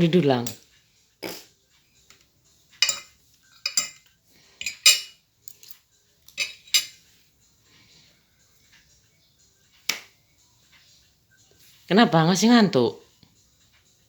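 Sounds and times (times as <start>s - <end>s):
metal spoon clinking on plate: 2.8s - 7.0s.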